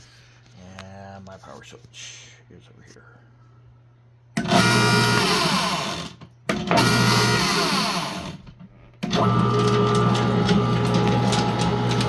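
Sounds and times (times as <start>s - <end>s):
motor winding down whine: 4.4s - 6.1s, 6.7s - 8.4s
shredder motor running: 4.4s - 12.0s.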